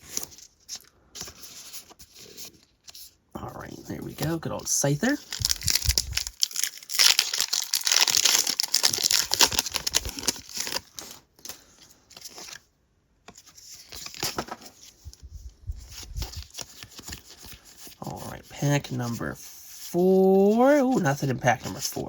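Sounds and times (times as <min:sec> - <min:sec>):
foil wrapper crinkling and tearing: 0:03.9 - 0:11.2.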